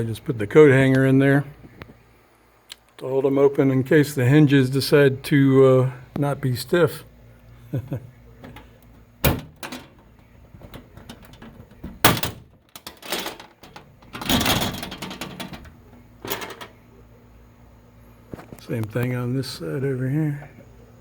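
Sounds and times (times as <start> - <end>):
metal shutter knocking and rattling: 8.4 - 16.8.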